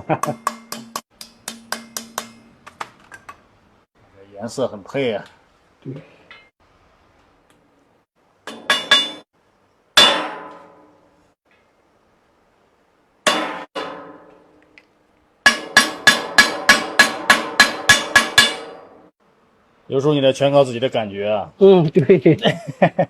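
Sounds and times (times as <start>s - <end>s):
hammer striking sheet metal: 0.2s - 2.5s, 8.5s - 9.3s, 10.0s - 10.9s, 13.3s - 14.4s, 15.4s - 19.1s.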